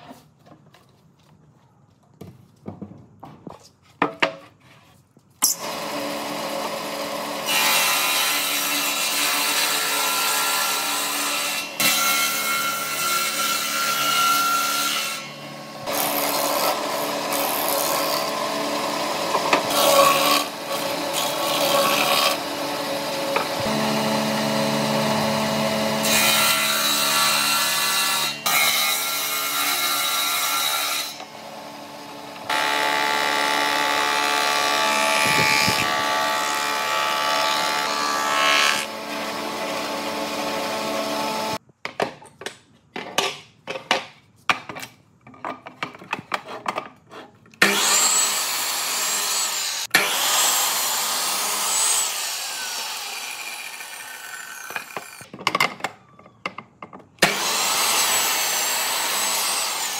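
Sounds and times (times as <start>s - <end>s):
power tool running on wood: 5.6s - 8.1s, 16.7s - 27.2s, 31.2s - 41.6s.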